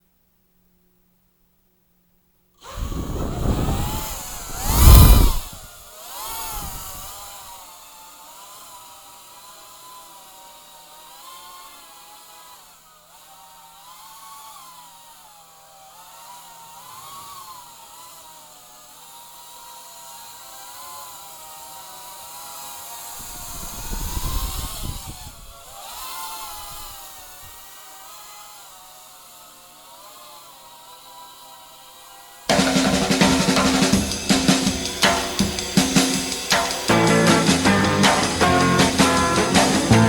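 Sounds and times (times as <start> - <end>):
loud rush of noise: 2.7 - 5.8
drone propellers whining: 2.7 - 7.4, 23.2 - 25.5, 32.5 - 40.0.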